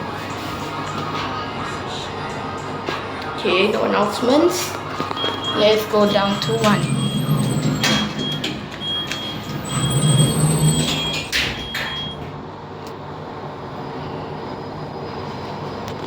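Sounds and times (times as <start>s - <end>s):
lift running hum: 0.0s - 16.0s
lift doors sliding shut: 4.6s - 12.4s
high electronic beeps: 5.1s - 12.2s.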